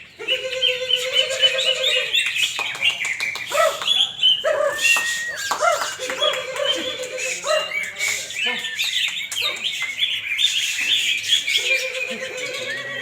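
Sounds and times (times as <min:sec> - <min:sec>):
birds singing chirps and trills: 0:00.0 - 0:13.0.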